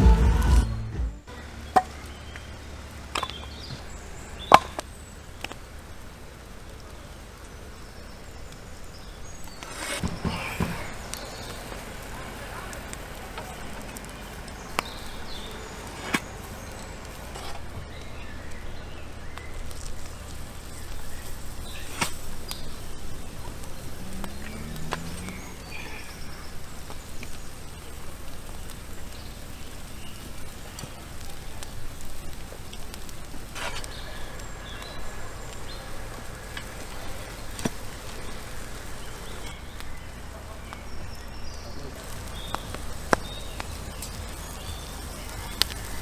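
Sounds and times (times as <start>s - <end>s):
wood fire crackling: 0.0s - 46.0s
sharp fire pops: 1.5s - 46.0s.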